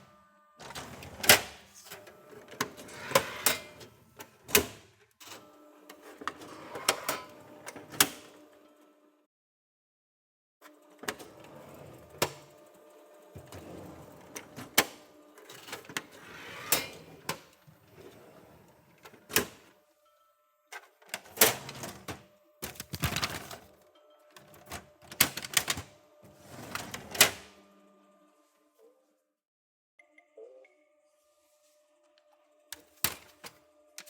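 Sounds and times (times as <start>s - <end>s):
printer clicks and whirring: 24.4s - 26.0s.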